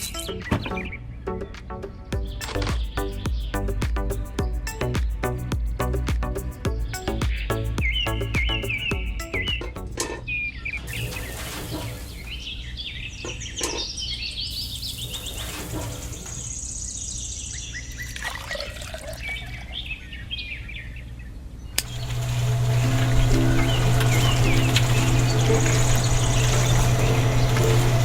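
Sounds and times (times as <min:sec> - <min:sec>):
small birds chirping: 0:01.9 - 0:11.3, 0:19.2 - 0:28.0
steady low hum: 0:21.8 - 0:28.0.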